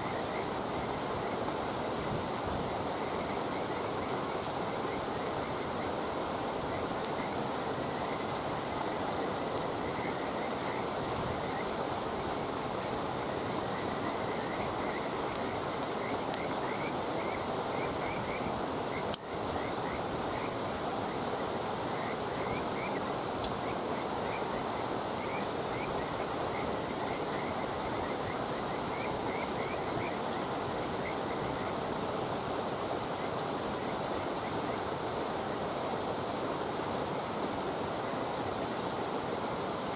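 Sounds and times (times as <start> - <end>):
frogs chirping: 0.0 - 35.7
campfire crackling and popping: 1.9 - 32.9.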